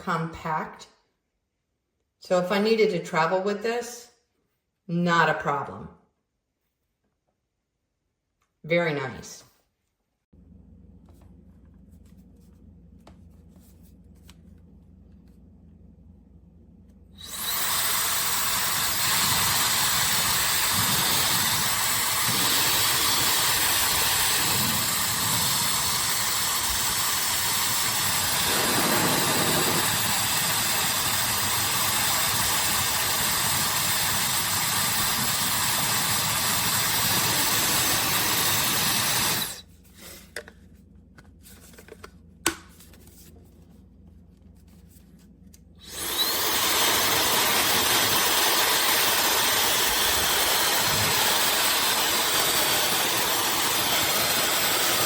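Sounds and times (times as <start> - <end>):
hair dryer running: 17.2 - 39.7, 45.8 - 55.0.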